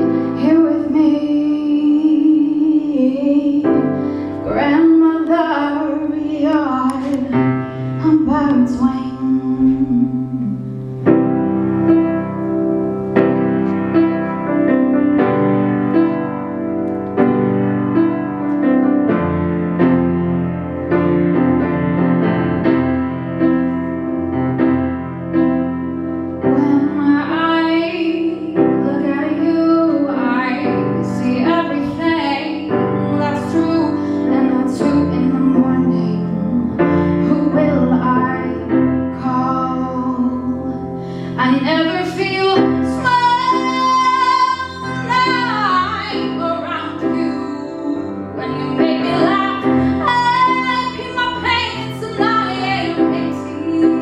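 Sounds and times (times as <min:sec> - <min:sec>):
woman singing a slow ballad: 0:00.0 - 0:10.9, 0:26.5 - 0:54.0
piano accompaniment: 0:00.0 - 0:54.0.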